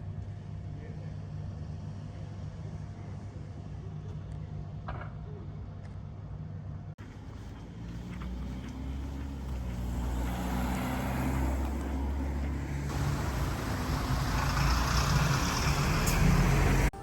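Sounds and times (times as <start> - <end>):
vehicle engine humming: 7.0 - 17.0.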